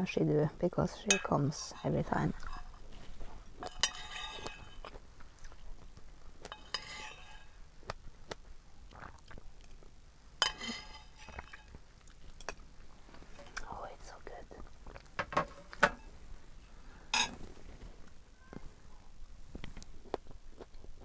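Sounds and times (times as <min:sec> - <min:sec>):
cutlery clinking against dish: 0:01.1 - 0:04.9, 0:06.5 - 0:07.6, 0:10.4 - 0:12.6, 0:15.2 - 0:16.1, 0:17.1 - 0:17.5.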